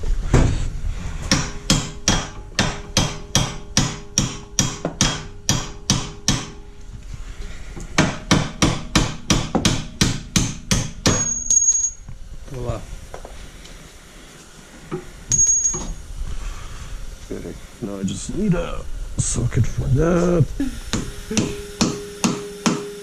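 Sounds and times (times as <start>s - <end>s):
metallic ringing tone: 11.1s - 12.1s, 15.3s - 16.1s
hammer blows on metal: 20.9s - 23.0s.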